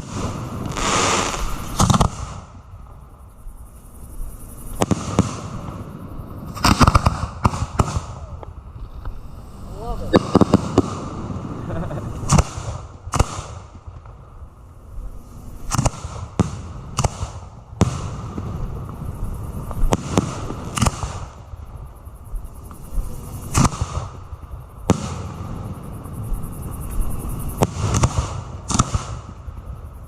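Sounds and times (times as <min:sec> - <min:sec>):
firework shells booming: 0:00.0 - 0:02.6, 0:04.8 - 0:08.9, 0:09.9 - 0:14.2, 0:15.6 - 0:21.5, 0:23.5 - 0:26.3, 0:27.6 - 0:29.5.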